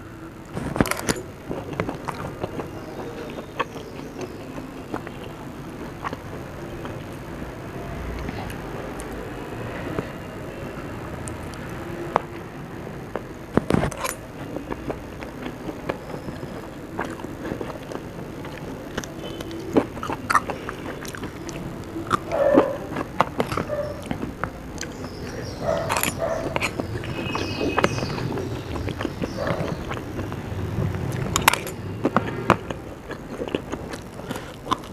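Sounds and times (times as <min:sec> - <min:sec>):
person chewing and crunching food: 0:00.0 - 0:09.2, 0:11.2 - 0:34.9
wet mouth clicks: 0:17.0 - 0:25.0.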